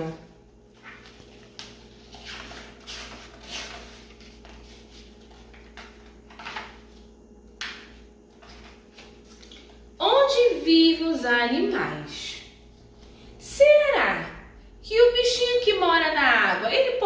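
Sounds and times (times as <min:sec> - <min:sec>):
pages turning: 0:00.7 - 0:09.9.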